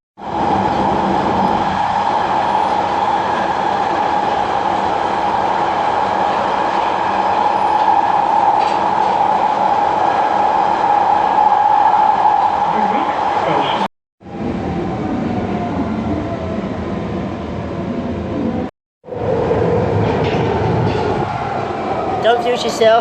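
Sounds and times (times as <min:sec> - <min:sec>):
underground train rumbling: 0:00.2 - 0:23.0.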